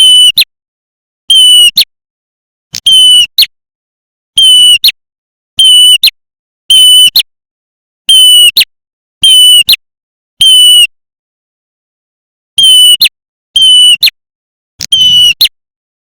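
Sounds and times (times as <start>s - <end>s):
bird call piping: 0.0s - 0.4s, 1.3s - 1.9s, 2.8s - 3.5s, 4.4s - 5.0s, 5.6s - 6.1s, 8.1s - 9.8s, 10.4s - 10.9s, 12.6s - 14.1s, 14.9s - 15.5s.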